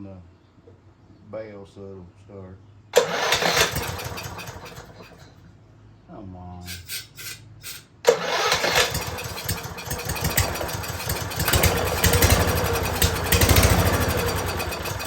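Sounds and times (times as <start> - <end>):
electric starter cranking: 3.0 - 5.3, 6.7 - 15.0
mower engine running raggedly: 3.0 - 5.3, 8.1 - 15.0.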